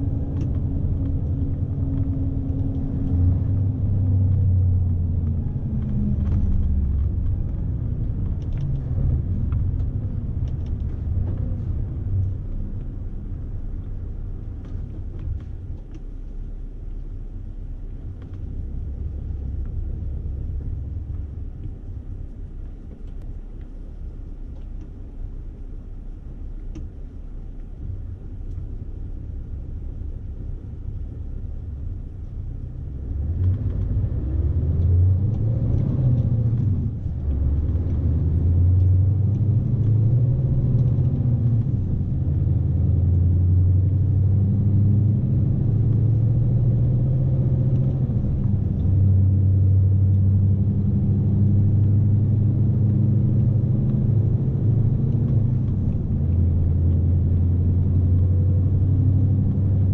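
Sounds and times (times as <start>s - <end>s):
diesel truck engine rumble: 0.0s - 59.9s.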